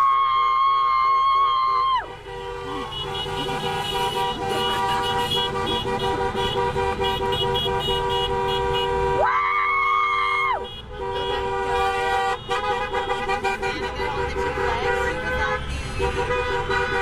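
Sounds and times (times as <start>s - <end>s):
many vehicle horns honking: 2.0s - 9.3s, 10.2s - 17.0s
loud horn blast: 2.1s - 9.2s, 10.6s - 17.0s.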